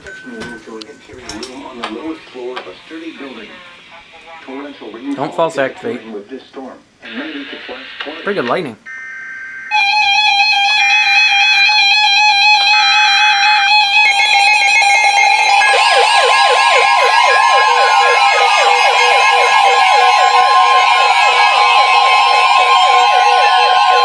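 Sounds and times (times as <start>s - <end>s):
steady attention tone: 0.0s - 6.2s, 8.8s - 24.0s
siren-like alarm yelp: 8.9s - 24.0s
electronic alert tones: 14.1s - 24.0s.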